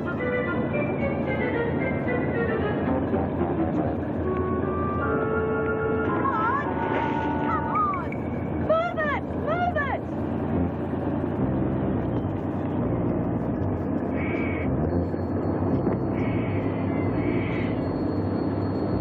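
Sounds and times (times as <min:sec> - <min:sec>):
vehicle engine running: 0:00.0 - 0:19.0.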